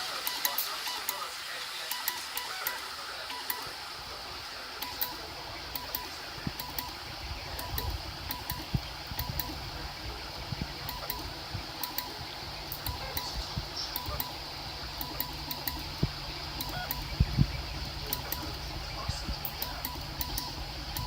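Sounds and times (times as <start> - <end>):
cooling fans running: 0.0 - 21.0
stepper motors whining and clicking: 0.0 - 21.0
low motor hum: 5.2 - 21.0.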